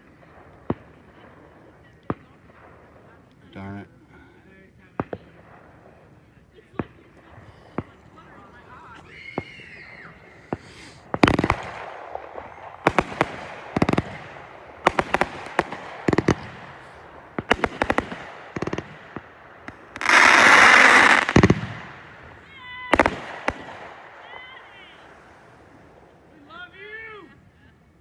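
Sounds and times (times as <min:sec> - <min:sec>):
fireworks bangs: 0:00.0 - 0:26.8
firework hissing burst: 0:08.6 - 0:24.1.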